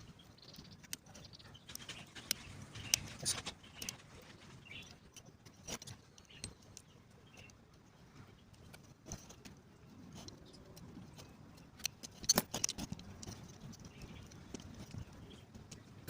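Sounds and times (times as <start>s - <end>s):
hand tools clicking and tapping: 4.7s - 7.8s, 8.5s - 16.0s.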